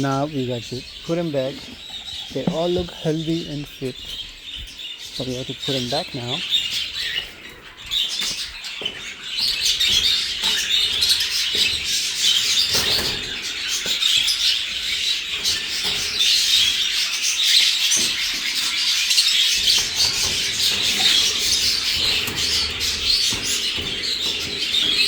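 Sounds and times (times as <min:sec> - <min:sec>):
budgerigars chattering and chirping: 0:00.0 - 0:25.0
short knocks: 0:01.6 - 0:04.2.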